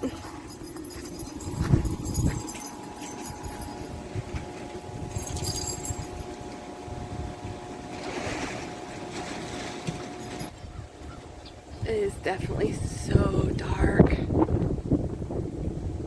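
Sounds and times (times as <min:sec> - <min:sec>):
faint steady hum: 0:00.0 - 0:16.0
gusty wind buffeting microphone: 0:01.2 - 0:07.9, 0:10.6 - 0:16.0.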